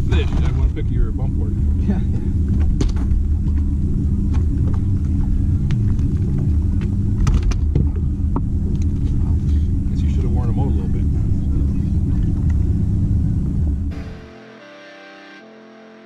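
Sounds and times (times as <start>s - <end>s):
boat motor running: 13.9s - 16.0s.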